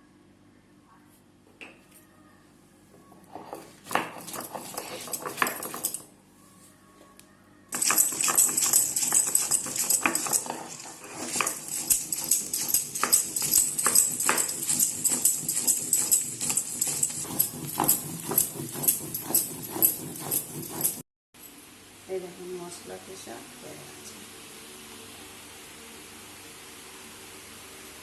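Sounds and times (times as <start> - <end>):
stone scraping on stone: 3.3 - 5.9, 7.8 - 21.0.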